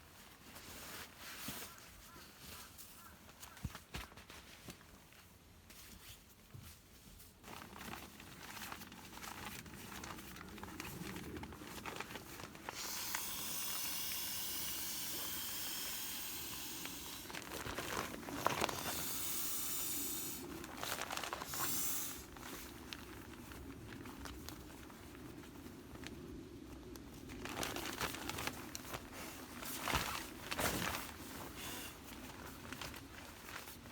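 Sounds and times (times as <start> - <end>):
packaging rustling and crinkling: 0.0 - 33.9
steady hiss: 12.5 - 22.8.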